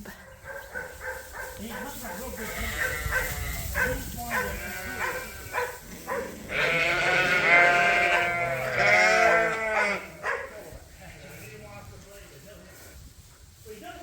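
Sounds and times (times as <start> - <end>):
sheep bleating: 2.4 - 3.7, 4.3 - 5.7, 6.5 - 10.2.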